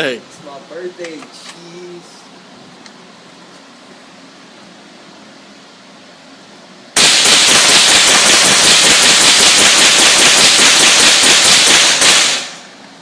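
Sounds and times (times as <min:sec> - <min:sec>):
rapid gunshots: 0:07.0 - 0:12.6.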